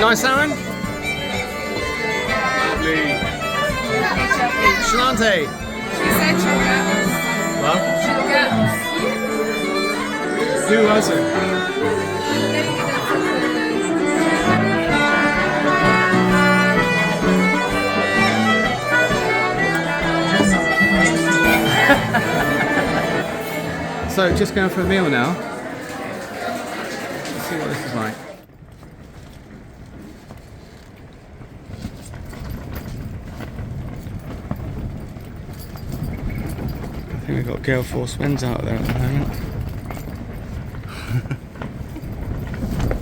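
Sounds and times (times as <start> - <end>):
irish instrumental folk music: 0.0 - 28.3, 32.2 - 43.0
wind buffeting microphone: 28.5 - 43.0.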